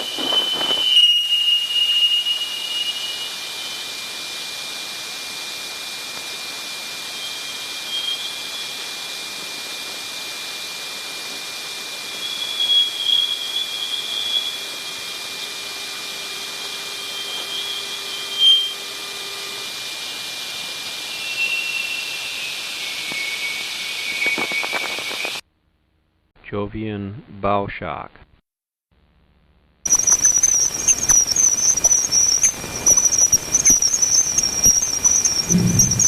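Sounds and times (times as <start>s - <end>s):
band of brighter hiss: 0.0s - 25.4s
steady hiss: 0.0s - 25.4s, 29.9s - 36.0s
thin high tone: 6.4s - 25.4s, 29.9s - 36.0s.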